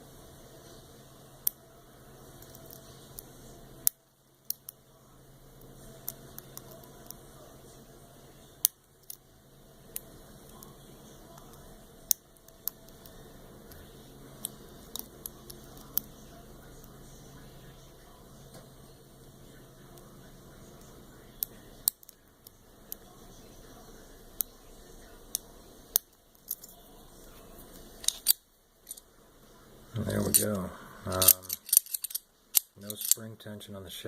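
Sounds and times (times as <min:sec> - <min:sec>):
lock pick metallic clicks: 0:31.2 - 0:33.2.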